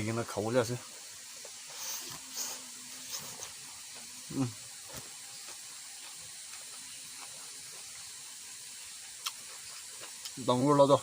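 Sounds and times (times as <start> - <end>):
background hiss: 0.0 - 11.0
soft eating sounds: 0.1 - 11.0
mouth clicks and smacks: 9.2 - 10.4.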